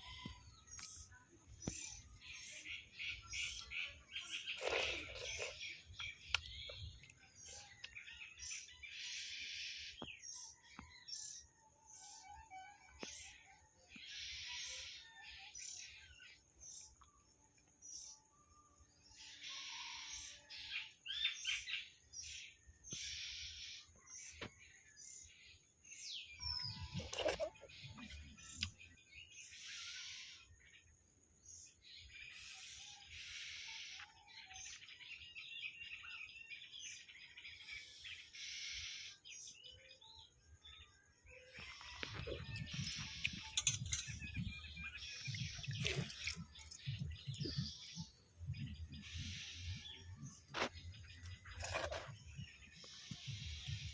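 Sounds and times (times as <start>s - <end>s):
small birds chirping: 0.0s - 53.9s.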